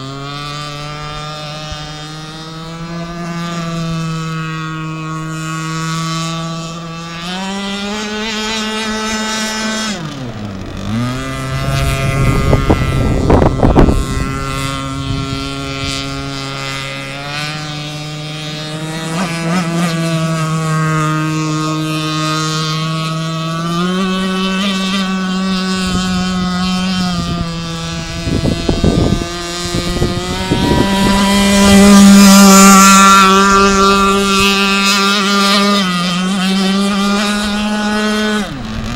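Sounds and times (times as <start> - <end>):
model boat engine buzzing: 0.0 - 38.9
bursts of rushing noise: 10.2 - 16.8.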